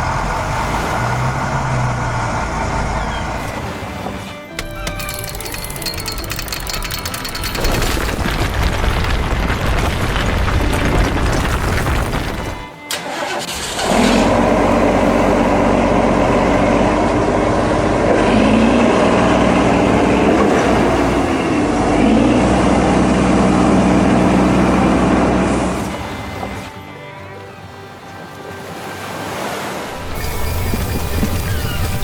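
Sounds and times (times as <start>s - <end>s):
background music: 2.4s - 8.1s, 12.6s - 30.4s
cartoon vehicle engine running: 4.6s - 9.4s.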